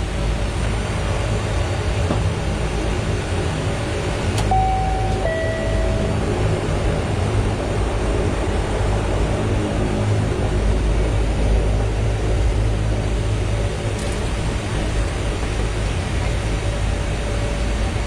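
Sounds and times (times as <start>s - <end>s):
turboprop engines droning: 0.0s - 18.0s
two-note descending chime: 4.5s - 6.7s.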